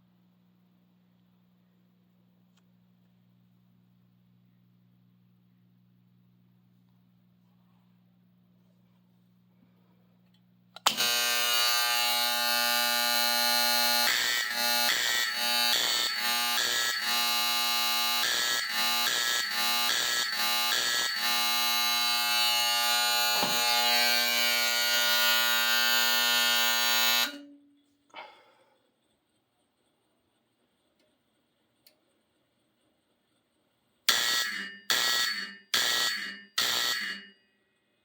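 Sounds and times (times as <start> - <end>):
fire alarm buzzing: 10.8 - 27.6, 34.0 - 37.7.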